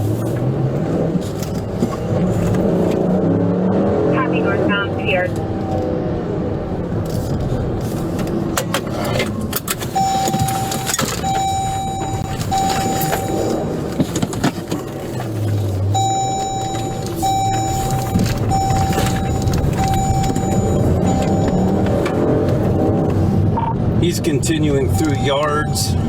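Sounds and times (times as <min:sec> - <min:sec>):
police vehicle noise: 0:00.0 - 0:26.0
electronic beep pulses: 0:10.0 - 0:13.7, 0:16.0 - 0:21.9, 0:23.6 - 0:23.8, 0:24.8 - 0:26.0.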